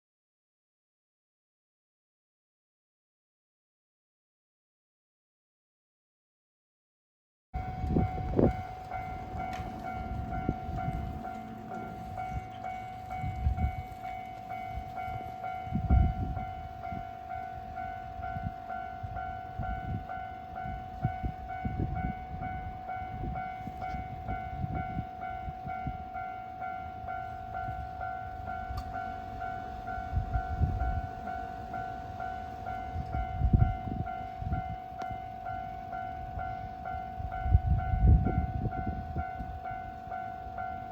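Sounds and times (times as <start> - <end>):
low rumbles: 7.6 - 20.1
level crossing warning bell: 7.6 - 40.9.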